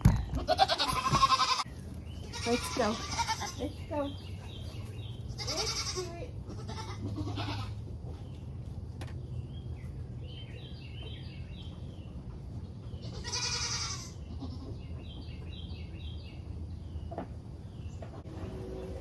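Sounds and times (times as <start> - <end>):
goat bleating: 0.4 - 3.9, 5.3 - 7.8, 13.0 - 14.8.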